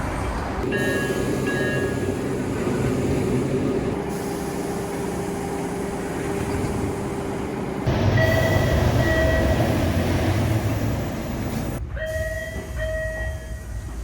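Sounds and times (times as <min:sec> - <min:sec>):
subway train rumble: 0:00.0 - 0:14.0
train door chime beeps: 0:00.6 - 0:02.2, 0:07.9 - 0:13.8.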